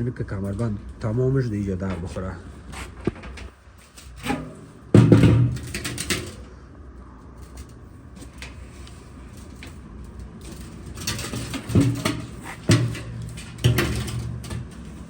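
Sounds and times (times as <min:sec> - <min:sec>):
belt rubbing and scraping: 0:07.3 - 0:15.0.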